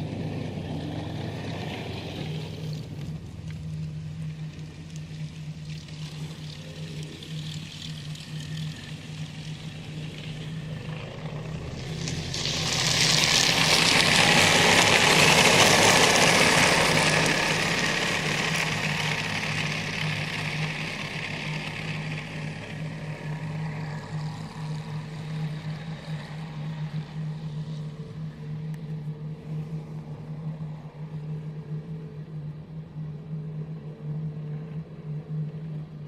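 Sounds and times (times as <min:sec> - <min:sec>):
rushing noise from the sky: 0:00.0 - 0:36.0
steady low hum: 0:00.0 - 0:36.0.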